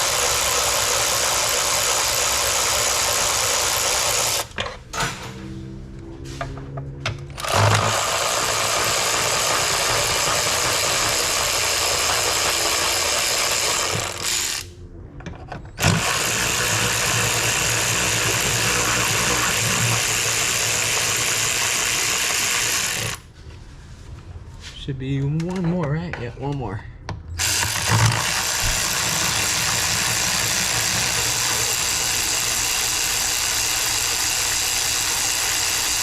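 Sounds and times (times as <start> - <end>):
power tool motor running: 0.0 - 4.5, 7.4 - 14.7, 15.8 - 23.2, 27.4 - 36.0.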